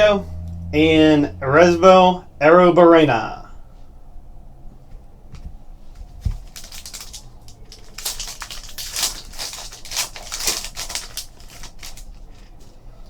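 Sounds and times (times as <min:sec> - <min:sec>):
card pack wrapper tearing: 0:06.5 - 0:12.2.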